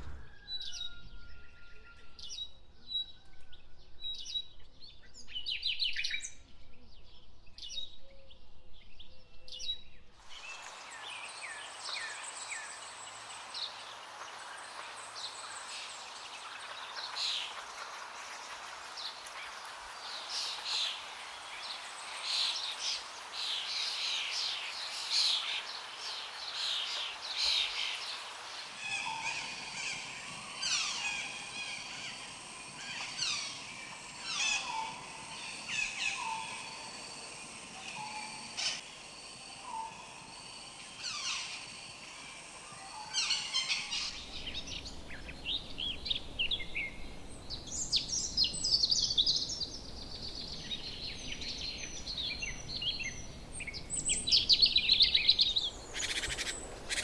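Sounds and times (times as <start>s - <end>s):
bird falling whistles: 0.0s - 1.1s
birds chattering: 43.7s - 57.0s.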